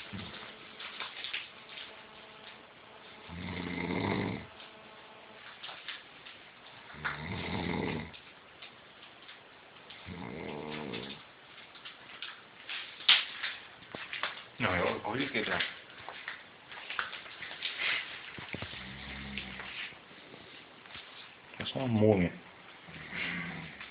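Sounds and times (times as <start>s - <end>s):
dog snoring: 3.2s - 4.6s, 6.8s - 8.2s, 10.0s - 11.2s, 18.6s - 19.9s, 22.8s - 23.9s.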